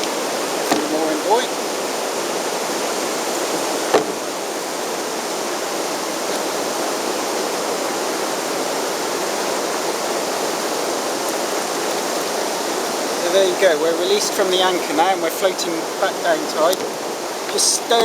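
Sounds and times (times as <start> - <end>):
river water rushing: 0.0 - 18.0
sharp knock: 3.9 - 4.3.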